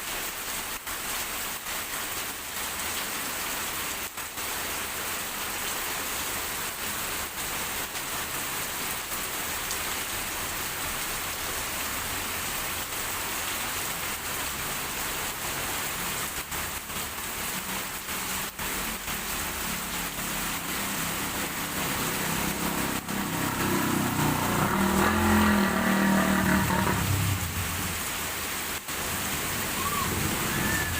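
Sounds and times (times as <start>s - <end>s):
heavy rain on a road: 0.0s - 30.9s
vehicle engine approaching: 20.1s - 28.1s.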